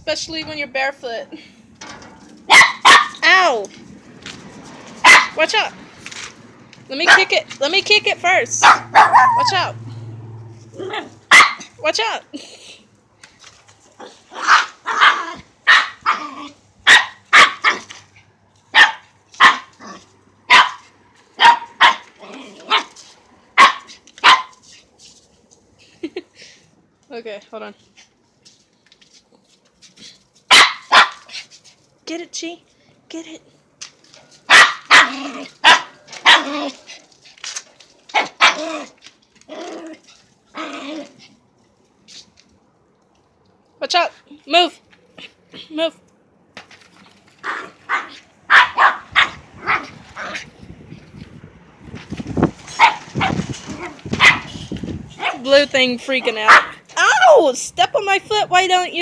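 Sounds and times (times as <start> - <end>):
dog barking: 2.5 - 3.2, 5.0 - 5.4, 8.6 - 9.6, 10.9 - 11.7, 14.4 - 16.2, 16.9 - 17.9, 18.7 - 19.7, 20.5 - 22.1, 23.6 - 24.6, 30.5 - 31.3, 34.5 - 36.6, 47.5 - 50.3, 52.8 - 53.4, 54.2 - 54.6, 55.2 - 55.5, 56.5 - 56.8.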